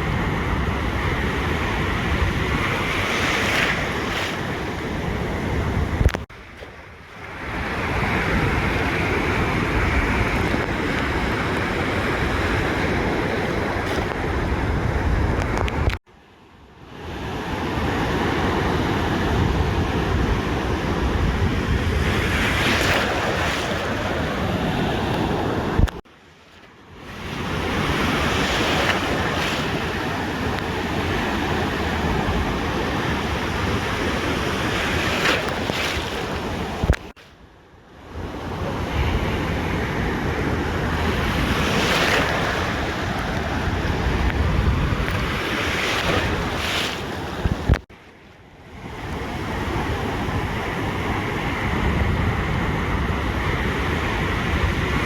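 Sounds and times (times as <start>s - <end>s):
wind on microphone: 0.0s - 16.0s, 17.2s - 26.0s, 26.9s - 37.2s, 38.1s - 47.9s, 48.6s - 55.0s
ocean waves breaking: 0.0s - 55.0s.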